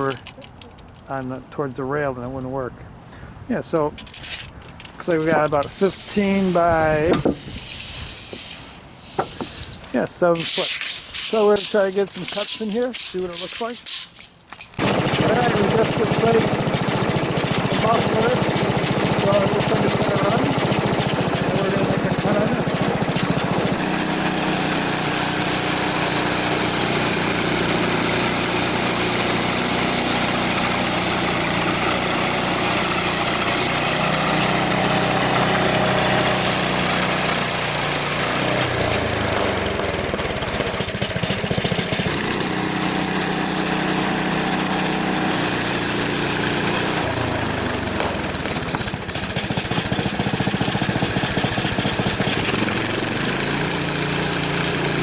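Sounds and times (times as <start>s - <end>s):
bandsaw cutting log: 0.0s - 0.7s, 5.0s - 55.0s
small gasoline engine running: 0.0s - 1.0s, 14.8s - 55.0s.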